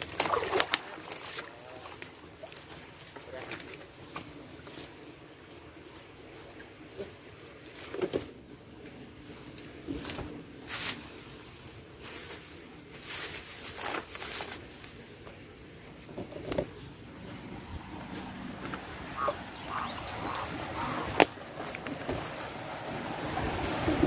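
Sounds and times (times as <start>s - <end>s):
water sloshing and splashing: 0.0s - 8.4s, 17.6s - 24.0s.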